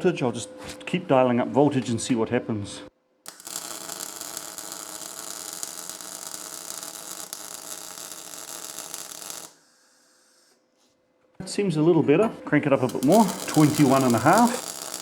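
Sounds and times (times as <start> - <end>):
welder arc crackling: 3.3 - 10.6, 12.8 - 15.0.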